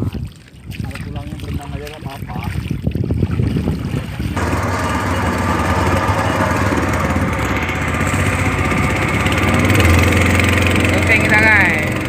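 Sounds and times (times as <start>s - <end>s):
boat engine droning: 4.2s - 12.0s.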